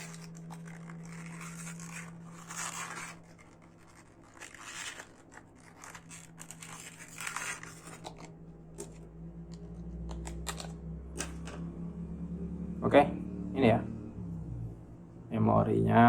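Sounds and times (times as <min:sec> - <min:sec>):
plastic packaging crinkling and tearing: 0:00.0 - 0:11.6.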